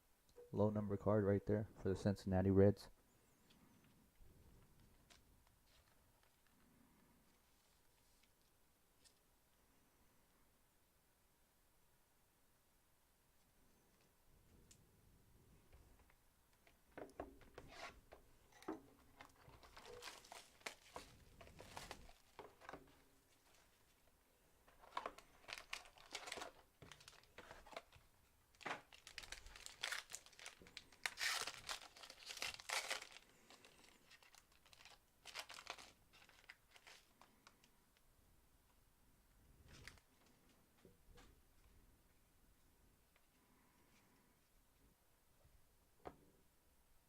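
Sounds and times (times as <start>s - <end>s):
card wrappers crinkling and tearing: 19.2s - 22.8s, 24.8s - 37.6s.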